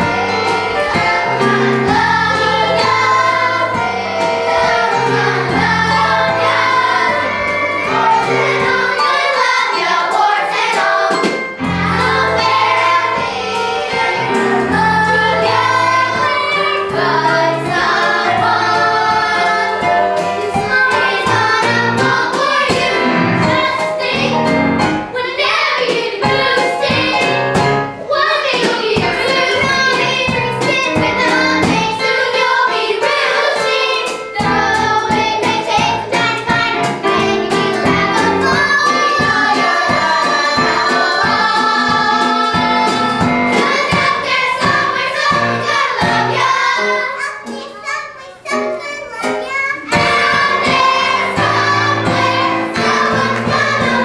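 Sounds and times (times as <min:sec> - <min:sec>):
children singing: 0:00.0 - 0:54.0
instrumental accompaniment: 0:00.0 - 0:54.0.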